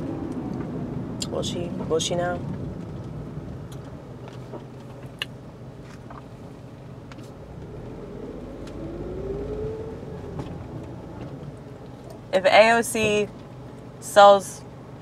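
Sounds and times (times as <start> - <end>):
car engine and road rumble: 0.0 - 15.0.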